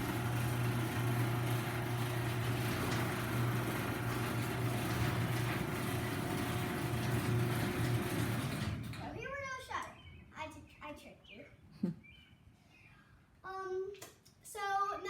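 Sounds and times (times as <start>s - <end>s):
garage door opener motor hum: 0.0s - 9.2s.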